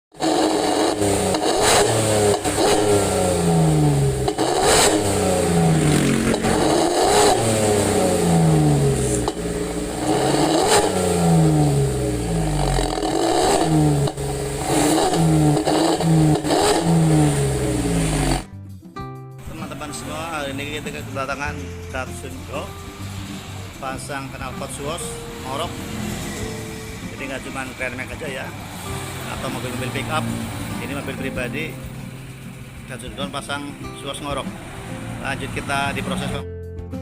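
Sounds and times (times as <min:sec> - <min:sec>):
car engine revving in blips: 0:00.1 - 0:18.5, 0:24.7 - 0:33.2.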